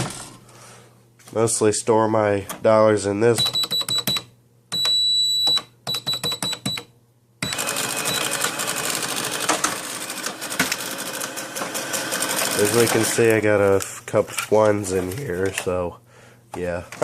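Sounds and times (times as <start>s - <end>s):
cash register beep: 3.4s - 9.3s.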